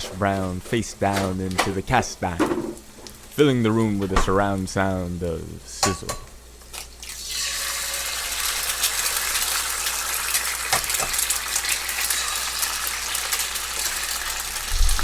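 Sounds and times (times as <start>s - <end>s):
hash brown sizzling in pan: 6.4s - 15.0s.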